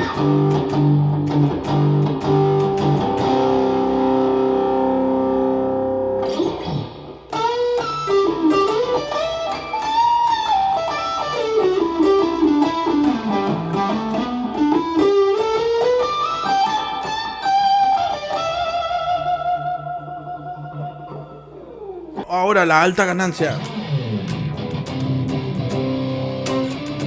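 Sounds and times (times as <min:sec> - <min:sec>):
electric guitar lead run: 0:00.0 - 0:22.2, 0:23.6 - 0:27.0.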